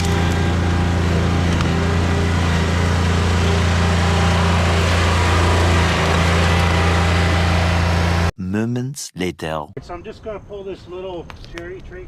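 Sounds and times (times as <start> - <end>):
tractor diesel engine running: 0.0 - 8.3.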